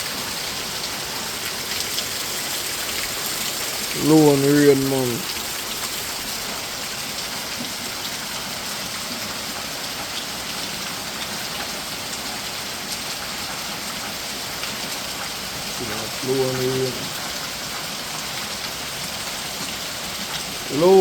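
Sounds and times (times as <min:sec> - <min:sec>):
water running off: 0:00.0 - 0:06.8, 0:19.2 - 0:21.0
rain falling: 0:00.0 - 0:21.0.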